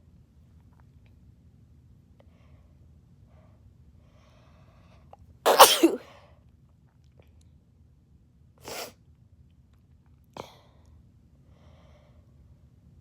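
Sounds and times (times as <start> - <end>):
sneezing burst: 5.5 - 6.1, 8.6 - 8.9
person sniffing and breathing: 8.7 - 8.9.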